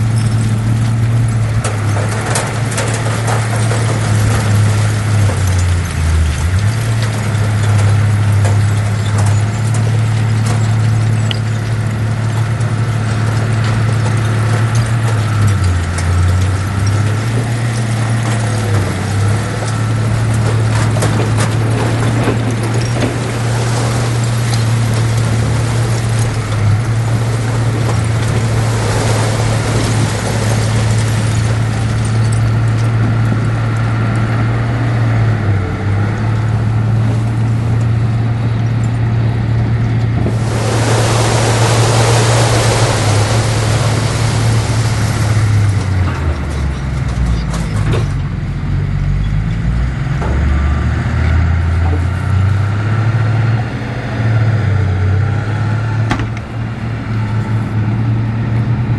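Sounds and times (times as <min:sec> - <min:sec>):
heavy diesel engine running: 0:00.0 - 0:58.9
loud hiss: 0:40.3 - 0:46.0.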